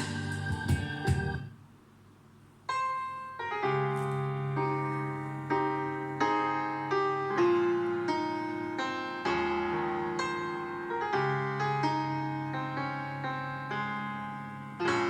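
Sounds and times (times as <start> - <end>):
bass line: 0.0 - 1.5
piano chords: 0.0 - 1.6, 2.7 - 15.0.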